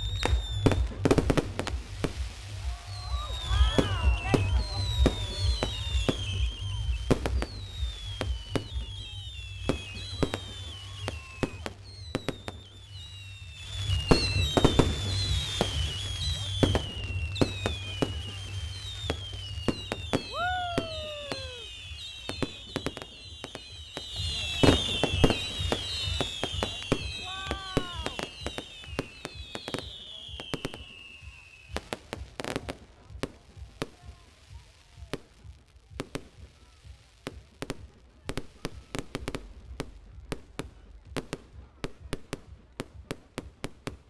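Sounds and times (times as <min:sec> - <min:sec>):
firework whistles falling in pitch: 0:00.0 - 0:01.3, 0:02.0 - 0:32.2
firework bangs and crackles: 0:00.0 - 0:44.0.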